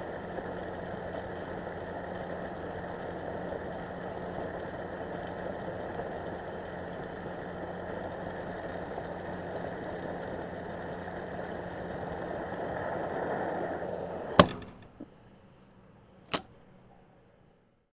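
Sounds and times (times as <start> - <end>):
fuel pouring into tank: 0.1 - 14.7
fuel nozzle clicking off: 14.2 - 15.1, 16.3 - 16.6.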